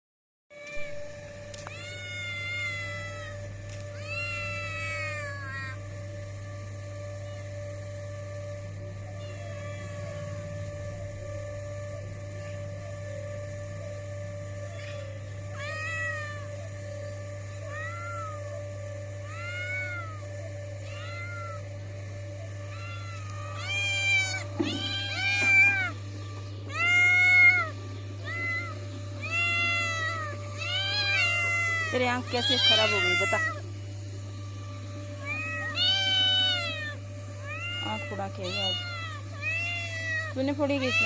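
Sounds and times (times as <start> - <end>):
kitten meowing: 1.6 - 3.4, 4.0 - 5.8, 14.9 - 16.5, 17.7 - 18.4, 19.2 - 20.2, 20.8 - 21.7, 22.7 - 26.0, 26.7 - 33.6, 35.2 - 41.0.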